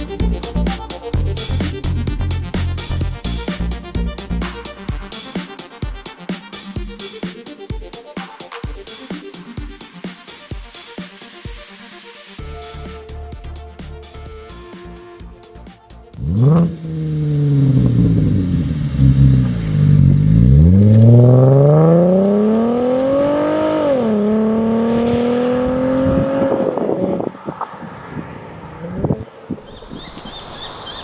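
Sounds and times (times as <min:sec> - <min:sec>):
car engine revving: 0:16.2 - 0:31.0.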